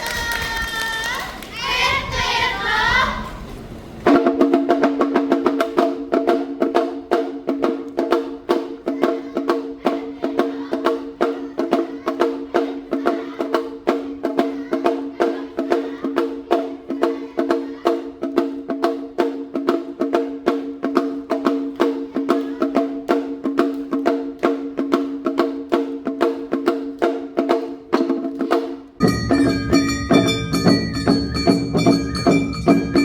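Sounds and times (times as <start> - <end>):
crowd chatter: 0.0 - 4.0, 8.8 - 18.2
quick percussion strikes: 4.0 - 33.0
steady ringing tones: 29.0 - 33.0.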